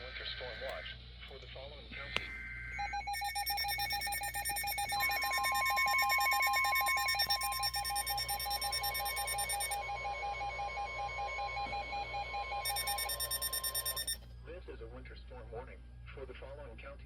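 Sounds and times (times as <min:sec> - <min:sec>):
steady warning alarm tone: 0:02.7 - 0:14.2
rapid electronic beeping: 0:02.8 - 0:09.8, 0:12.6 - 0:14.2.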